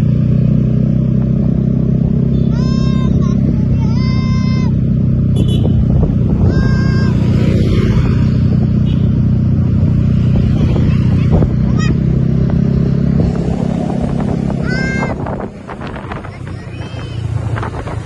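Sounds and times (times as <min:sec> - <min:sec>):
bus engine running: 0:00.0 - 0:18.0
musical bus horn: 0:05.3 - 0:05.9.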